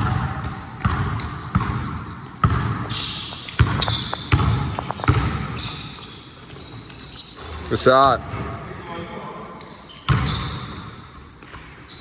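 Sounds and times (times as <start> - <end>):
basketball dribbling thumps: 0.0 - 2.9, 3.6 - 5.7
sneakers squeaking on court: 0.0 - 8.1, 9.0 - 12.0.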